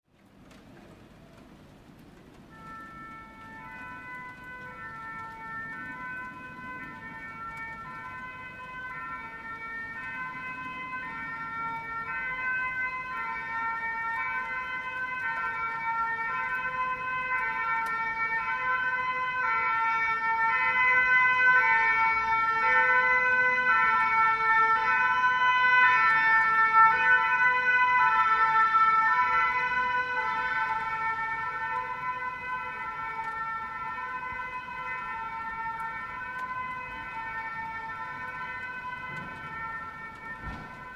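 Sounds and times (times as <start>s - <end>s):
two-tone emergency siren: 1.3s - 40.9s.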